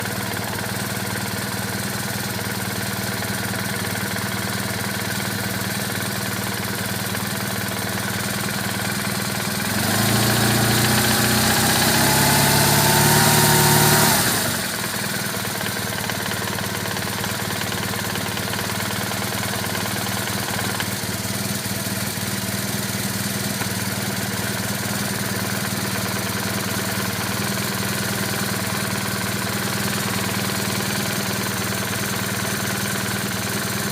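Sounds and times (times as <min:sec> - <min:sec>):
motorcycle engine idling: 0:00.0 - 0:33.9
engine revving: 0:09.6 - 0:14.9.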